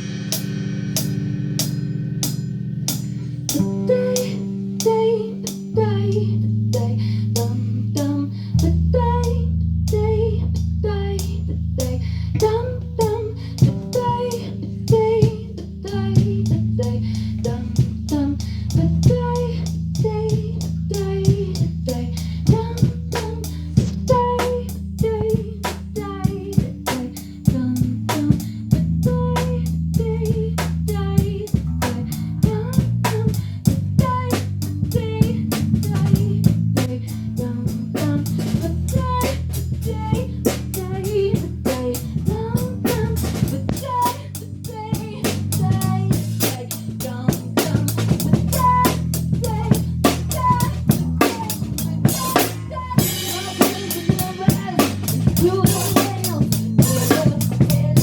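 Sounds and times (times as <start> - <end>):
band music: 0.0 - 4.4, 22.5 - 29.4, 45.0 - 58.0
drum kit beat: 0.0 - 5.6, 12.4 - 15.6, 16.2 - 58.0
bass line: 0.0 - 58.0.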